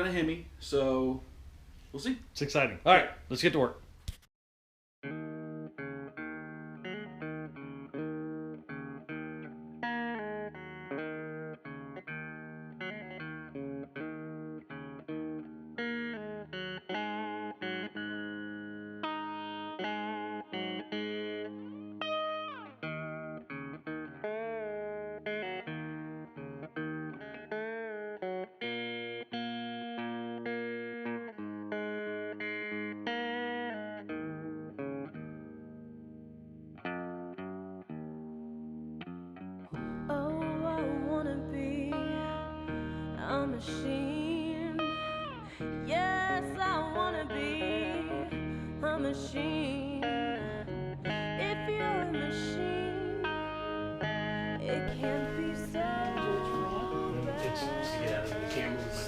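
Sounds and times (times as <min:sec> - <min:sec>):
plucked guitar notes: 0:05.0 - 0:59.0.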